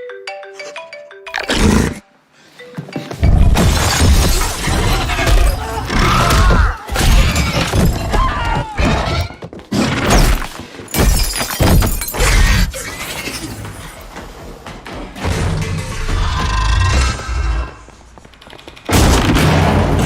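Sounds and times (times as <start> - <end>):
glass shattering: 3.5 - 6.0, 10.9 - 12.6
crashing and breaking: 3.5 - 8.3.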